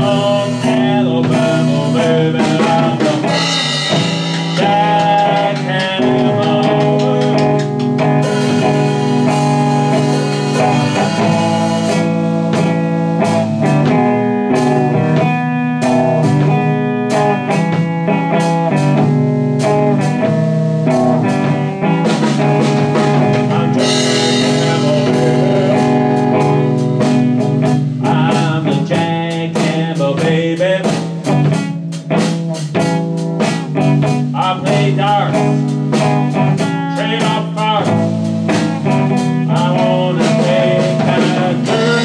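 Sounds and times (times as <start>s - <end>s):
blues guitar: 0.0s - 42.0s
drum kit: 0.0s - 42.0s.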